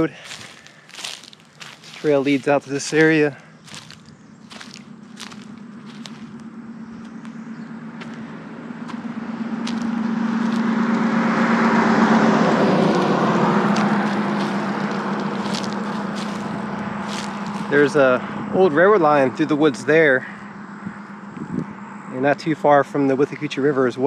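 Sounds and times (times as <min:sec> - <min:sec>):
car passing by: 0:07.3 - 0:18.4.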